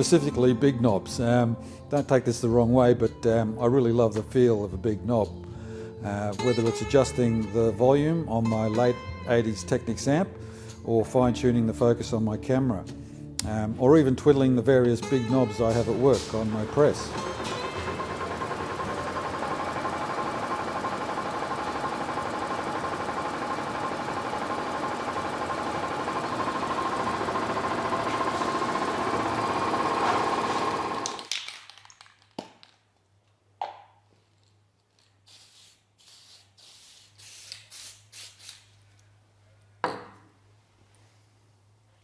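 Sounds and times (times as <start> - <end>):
heavy machinery humming: 15.0 - 31.1.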